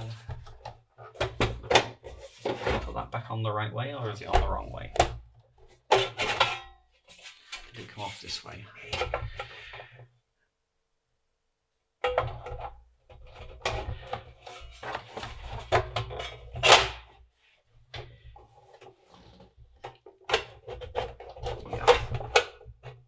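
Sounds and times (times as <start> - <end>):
sheet metal cover clunks and scrapes: 0.0 - 3.0, 4.3 - 8.2, 12.1 - 17.2, 18.0 - 23.0.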